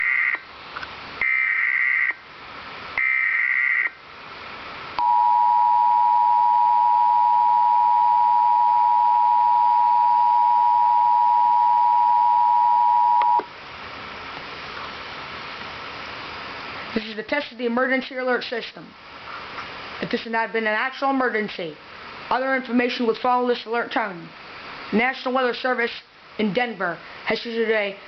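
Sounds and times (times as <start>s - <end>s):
two-tone alert signal: 5.0s - 13.5s.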